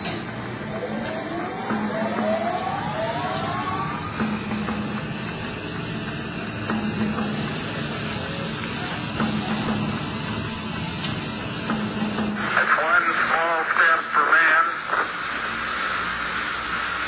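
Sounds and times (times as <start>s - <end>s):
low hum: 0.0s - 13.5s
steady hissing noise: 0.3s - 17.0s
rising whistle-like tones: 0.8s - 4.2s.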